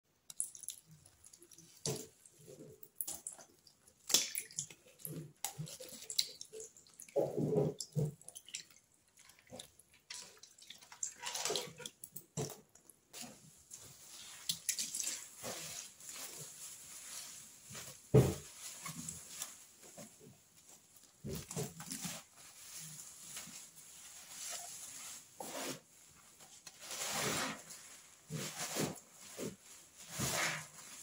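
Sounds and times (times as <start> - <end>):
wet squelching and splashing: 0.3 - 12.8, 14.0 - 16.5.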